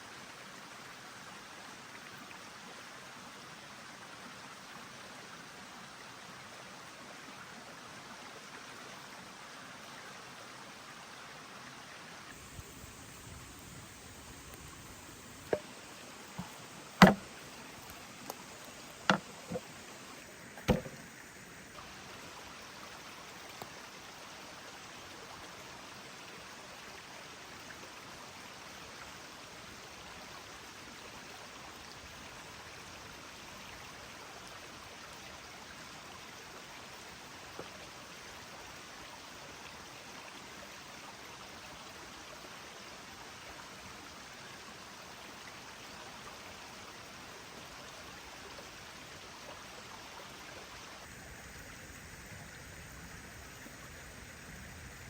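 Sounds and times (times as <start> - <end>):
sharp knocks: 16.3 - 17.4, 20.6 - 21.1.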